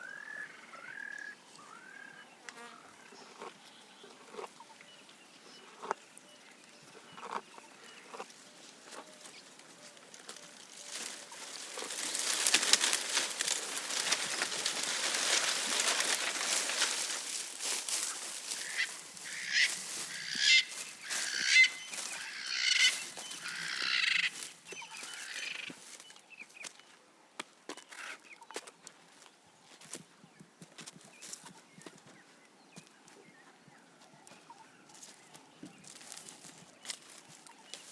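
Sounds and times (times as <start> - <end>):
leafy branches rustling: 8.6 - 26.1
short bird calls: 18.0 - 25.8.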